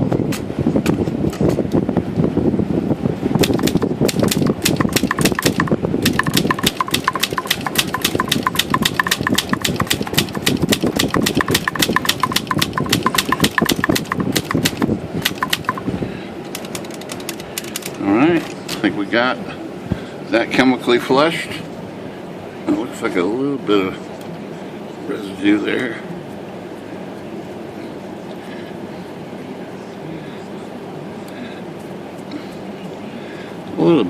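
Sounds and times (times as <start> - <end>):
typewriter keystrokes clacking: 3.4 - 15.8, 16.5 - 18.0.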